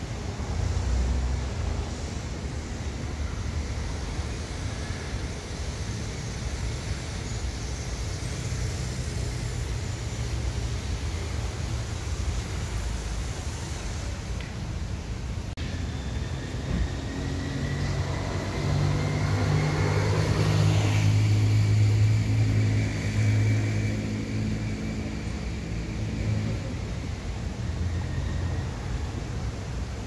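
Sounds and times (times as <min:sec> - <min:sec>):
thin whine: 0:00.0 - 0:30.0.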